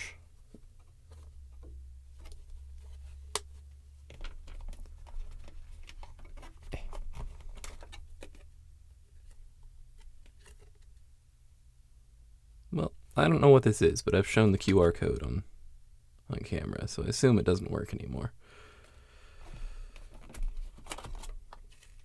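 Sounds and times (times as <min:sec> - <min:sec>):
hands handling small items: 0:00.4 - 0:11.1, 0:18.8 - 0:22.0.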